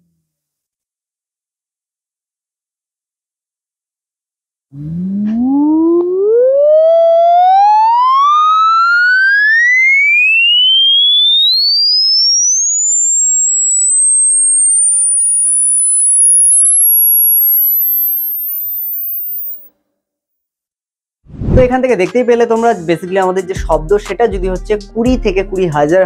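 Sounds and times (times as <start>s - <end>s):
rising sine-wave test tone: 4.7s - 19.7s.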